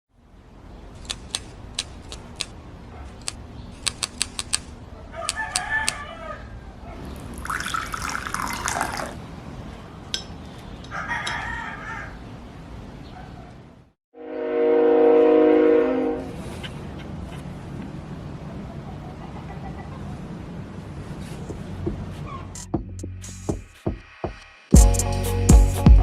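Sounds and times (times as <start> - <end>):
sharp ticks: 1.0 - 2.6, 3.2 - 4.7
sharp short ticks: 3.2 - 4.7
rooster crowing: 5.1 - 6.8, 10.9 - 12.3.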